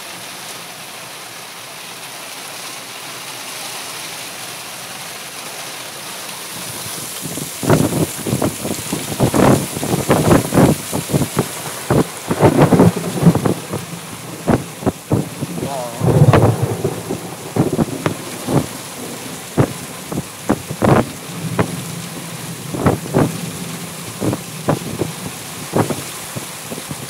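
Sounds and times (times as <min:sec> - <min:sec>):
steady rain hiss: 0:00.0 - 0:27.0
large raindrops smacking: 0:06.2 - 0:27.0
deep thunder rumble: 0:07.5 - 0:27.0.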